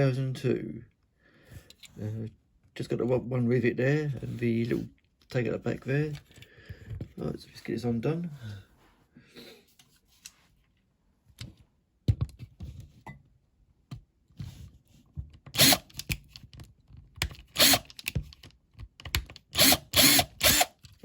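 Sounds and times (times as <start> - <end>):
tools clicking and knocking: 15.2 - 21.0.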